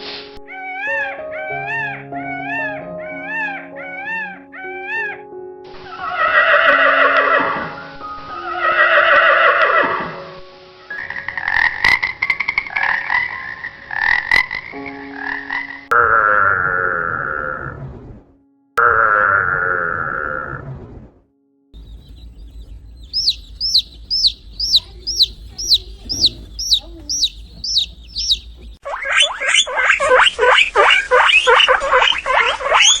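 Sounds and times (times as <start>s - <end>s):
soft background music: 0.0s - 17.4s, 21.3s - 28.6s
animal calls: 0.5s - 5.3s, 5.9s - 7.6s, 21.8s - 33.0s.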